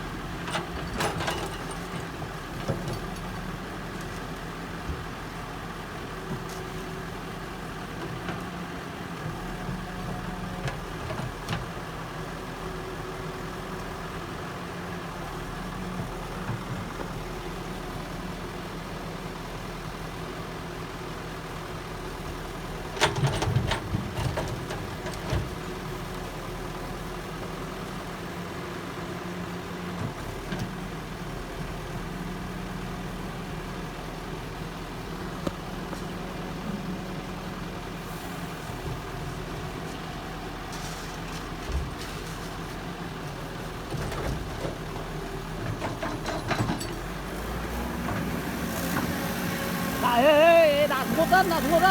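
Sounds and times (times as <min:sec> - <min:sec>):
heavy machine engine running: 0:19.8 - 0:51.9.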